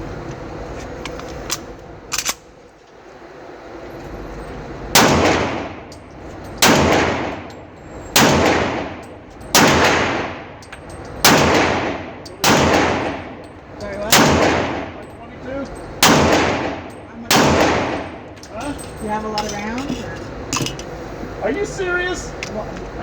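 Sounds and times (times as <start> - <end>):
pistol shots with ringing echo: 5.0 - 5.9, 6.6 - 15.2, 15.9 - 18.4.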